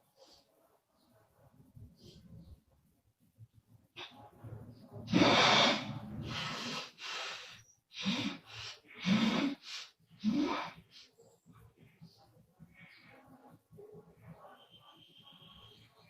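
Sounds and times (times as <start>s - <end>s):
noisy breaths with low buzz: 4.0s - 14.4s.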